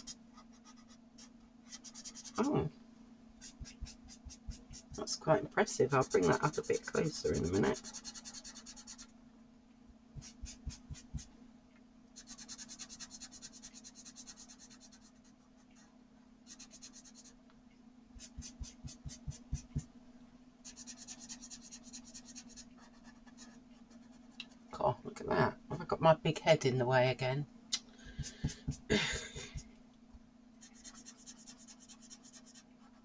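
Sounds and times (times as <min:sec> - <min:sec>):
pencil blender scratching paper: 0:00.0 - 0:02.6, 0:03.4 - 0:05.1, 0:05.8 - 0:09.1, 0:10.2 - 0:11.3, 0:12.2 - 0:15.9, 0:16.5 - 0:17.4, 0:18.2 - 0:19.9, 0:20.6 - 0:24.4, 0:28.2 - 0:28.9, 0:30.6 - 0:33.0
faint steady hum: 0:00.0 - 0:33.0.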